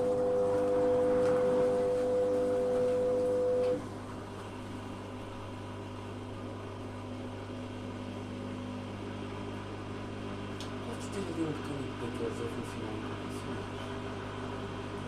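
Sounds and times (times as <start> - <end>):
loud electrical hum: 0.0 - 15.0
washing machine low hum: 0.0 - 15.0.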